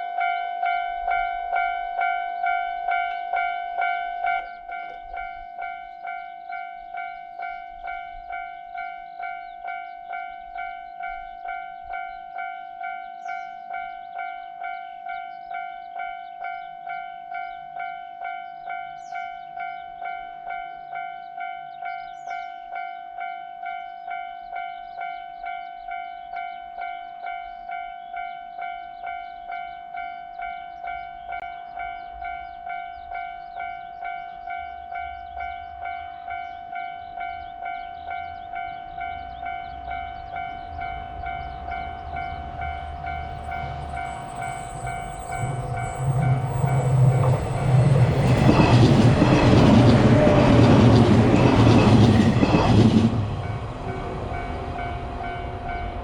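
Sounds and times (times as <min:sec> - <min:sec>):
level crossing bell ringing: 0:40.0 - 0:48.6.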